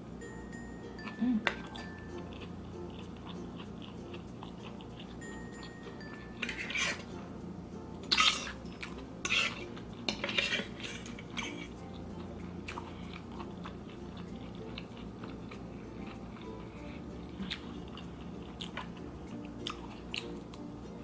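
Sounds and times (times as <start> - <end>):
cutlery clinking on dish: 6.0 - 7.1, 8.0 - 11.7.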